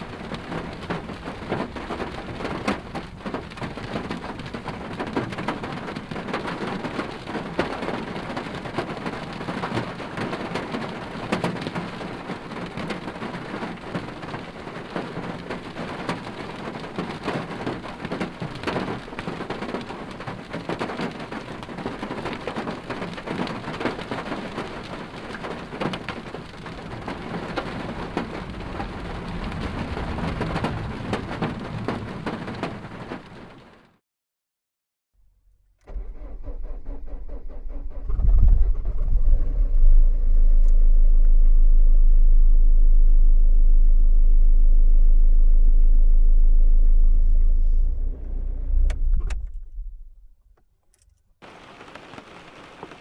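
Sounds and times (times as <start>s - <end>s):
rain on car roof: 0.0s - 34.0s, 51.4s - 53.0s.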